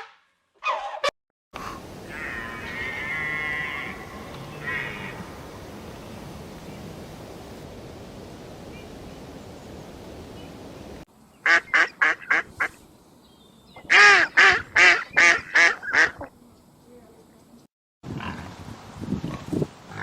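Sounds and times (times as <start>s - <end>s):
outdoor background noise: 0.0s - 20.0s
waterfowl honking: 2.1s - 5.3s, 11.4s - 12.8s, 13.9s - 16.3s.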